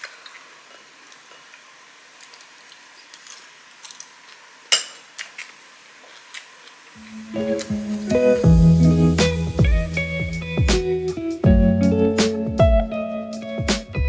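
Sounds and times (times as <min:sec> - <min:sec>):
cutlery clinking on plates: 0:04.7 - 0:05.1
guitar music: 0:07.0 - 0:14.0.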